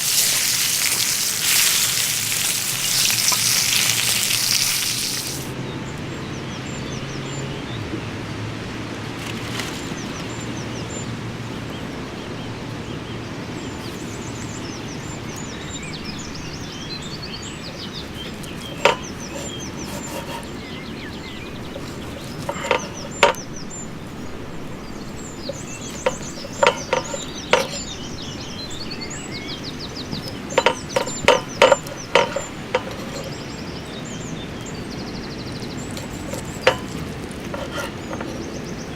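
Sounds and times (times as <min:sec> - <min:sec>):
birds chirping: 0:00.0 - 0:07.8, 0:09.1 - 0:38.9
steady outdoor rush: 0:00.0 - 0:38.9.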